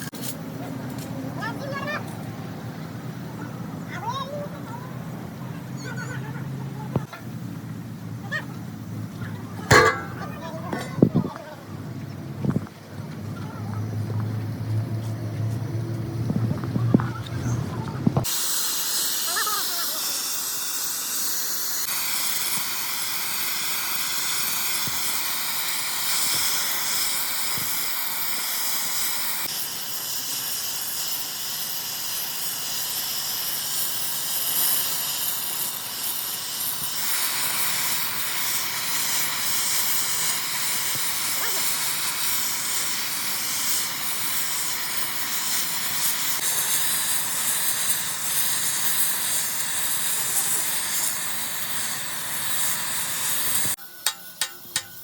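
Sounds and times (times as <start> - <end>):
loud hissing: 18.1 - 55.0.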